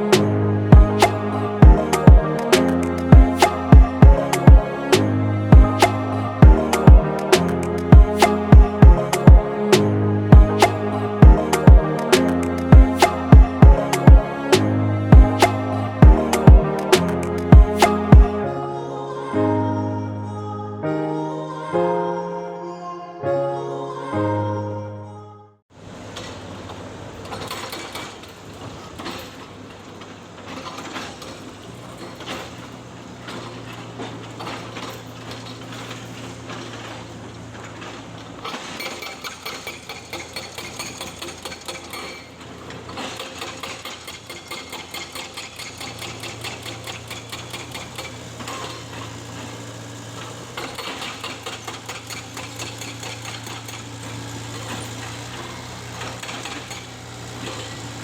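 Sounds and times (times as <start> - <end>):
excavator diesel engine running: 0.0 - 18.5, 25.8 - 58.0
rapid metallic clattering: 33.3 - 49.3, 50.0 - 57.9.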